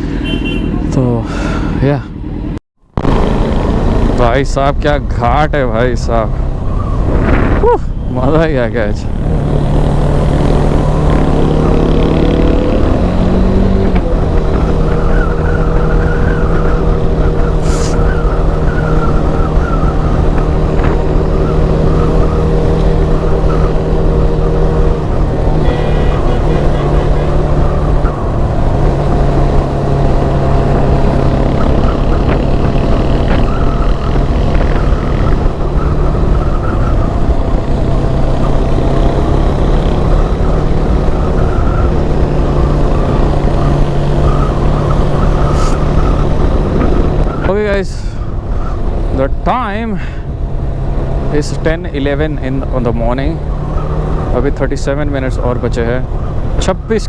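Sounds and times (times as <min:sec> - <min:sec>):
wind noise: 0:06.2 - 0:49.4
motorcycle engine running: 0:09.0 - 0:56.9.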